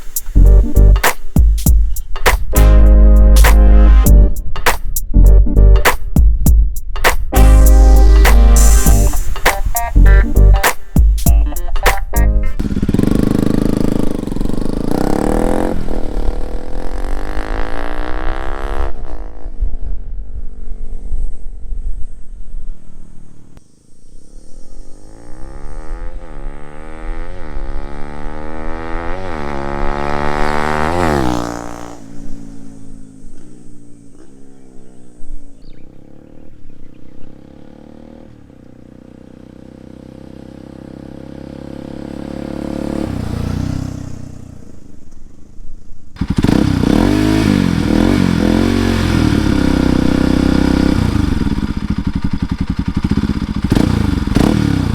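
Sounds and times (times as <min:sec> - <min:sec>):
motorcycle engine revving through gears: 0:12.6 - 0:20.0, 0:24.2 - 0:45.3, 0:46.2 - 0:54.9.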